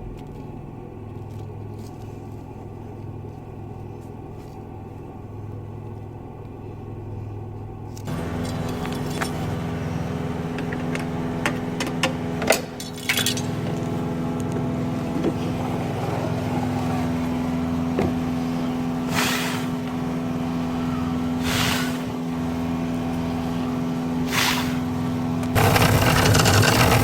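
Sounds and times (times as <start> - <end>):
car engine idling: 0.0 - 27.0
short hissing bursts: 19.0 - 19.8, 21.4 - 22.1, 24.3 - 24.9.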